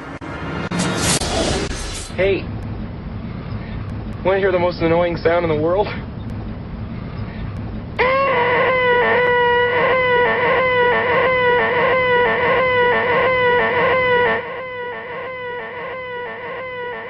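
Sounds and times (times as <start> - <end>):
man's high nasal whine: 8.0 - 17.0.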